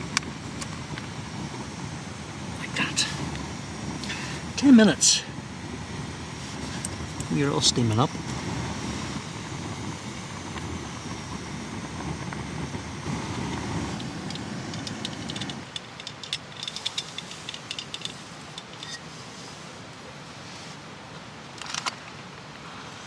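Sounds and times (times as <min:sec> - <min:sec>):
gas stove burner running: 0:00.0 - 0:15.8.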